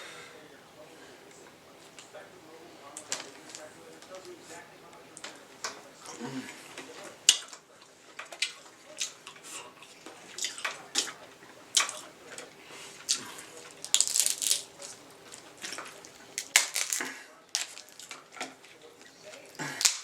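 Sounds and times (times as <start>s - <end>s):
wet handling: 11.8s - 18.4s
crab shells cracking: 11.8s - 18.5s, 19.3s - 20.0s.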